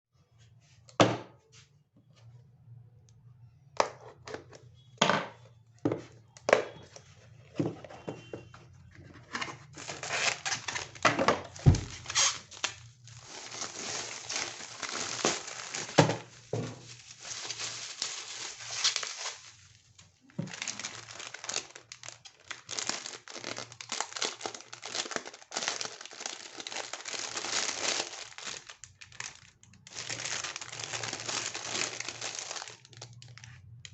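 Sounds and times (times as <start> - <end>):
packaging crinkling and tearing: 9.3 - 33.9.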